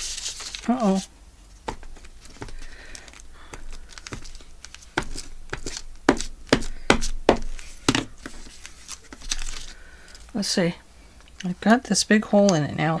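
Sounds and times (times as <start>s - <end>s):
paper crinkling and rustling: 0.0s - 10.4s.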